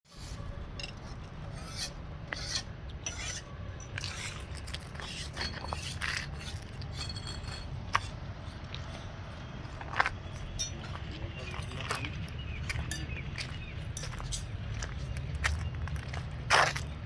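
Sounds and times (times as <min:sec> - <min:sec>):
hand tools scraping stone: 0:00.1 - 0:11.0
steady low rumble: 0:00.1 - 0:17.0.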